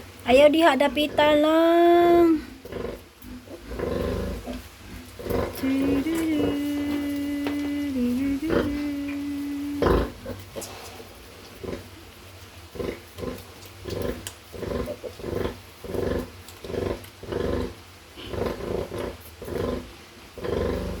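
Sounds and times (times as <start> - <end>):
sow grunting: 0.3 - 11.0, 12.8 - 21.0.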